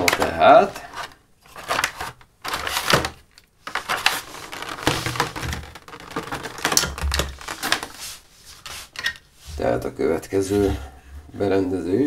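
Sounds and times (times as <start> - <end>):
equipment and cables clattering: 0.0 - 7.9.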